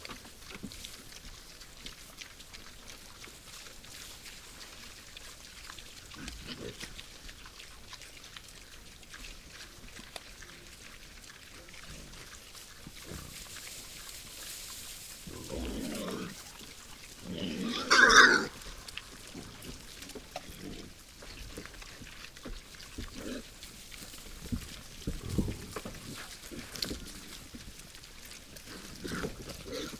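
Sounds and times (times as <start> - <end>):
faint crackling rustle: 0.0 - 29.9
wild boars grunting: 10.6 - 29.9.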